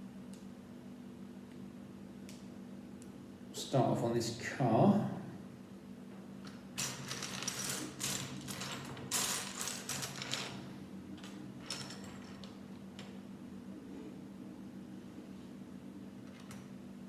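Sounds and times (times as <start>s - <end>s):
steady low hum: 0.0s - 6.8s, 10.5s - 17.0s.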